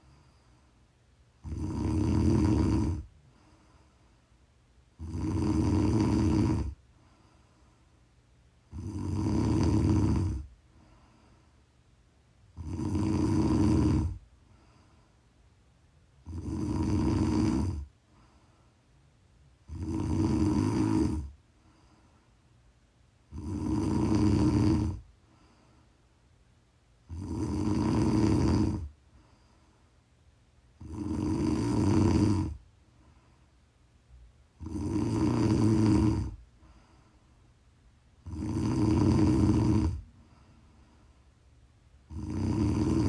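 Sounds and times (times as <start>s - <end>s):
quiet breathing: 0.0s - 43.0s
woman snoring: 1.4s - 3.1s, 5.0s - 6.8s, 8.7s - 10.5s, 12.6s - 14.2s, 16.2s - 17.9s, 19.6s - 21.4s, 23.3s - 25.1s, 27.1s - 28.9s, 30.8s - 32.6s, 34.6s - 36.4s, 38.2s - 40.1s, 42.1s - 43.0s.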